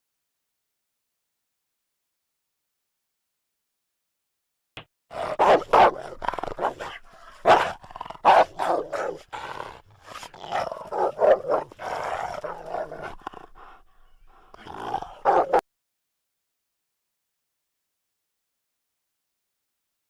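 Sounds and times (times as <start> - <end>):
cartoon dog growling and barking: 5.1 - 15.6.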